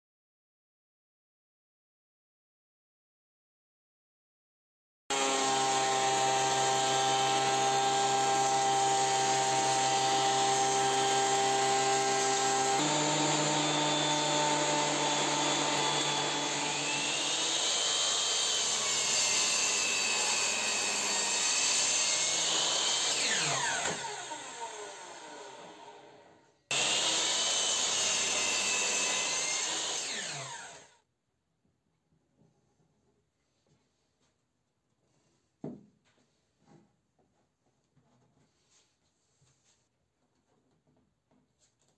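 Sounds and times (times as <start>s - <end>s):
power tool motor running: 5.1s - 31.0s.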